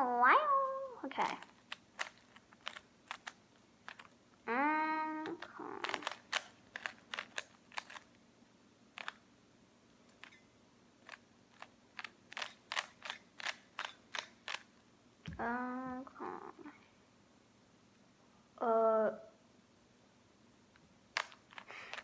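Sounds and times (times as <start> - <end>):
puzzle cube layers clicking: 1.2 - 4.2, 5.2 - 8.1, 9.0 - 9.2, 10.1 - 10.4, 11.0 - 14.7, 21.2 - 22.0
person humming: 4.5 - 6.2, 15.3 - 16.8, 18.6 - 19.3.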